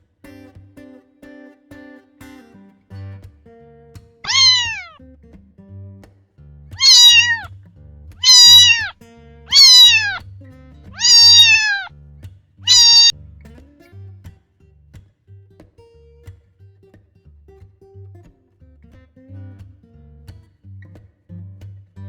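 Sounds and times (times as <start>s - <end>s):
quiet guitar music: 0.0s - 22.0s
cat meowing: 4.3s - 4.9s, 6.8s - 7.5s, 8.2s - 8.9s, 9.5s - 10.2s, 11.0s - 11.9s, 12.7s - 13.1s.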